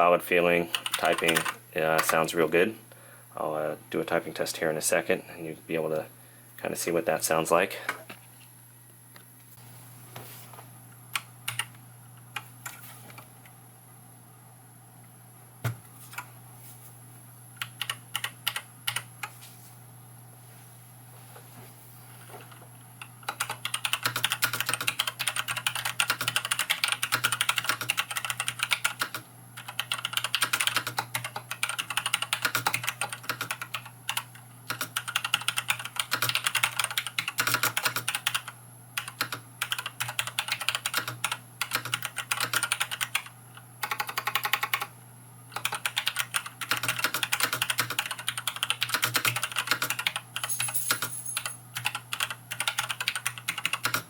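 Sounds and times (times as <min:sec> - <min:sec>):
mechanical keyboard typing: 0:00.7 - 0:02.3, 0:11.2 - 0:11.7, 0:17.6 - 0:19.1, 0:23.2 - 0:44.9, 0:45.5 - 0:54.0.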